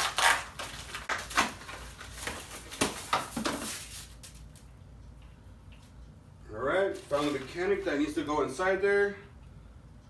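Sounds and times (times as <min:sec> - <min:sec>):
packaging rustling: 0:00.0 - 0:04.5, 0:07.0 - 0:07.8.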